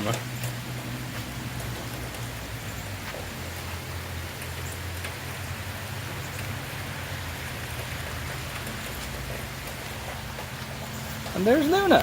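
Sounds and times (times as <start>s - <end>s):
steady rain falling: 0.0s - 12.0s.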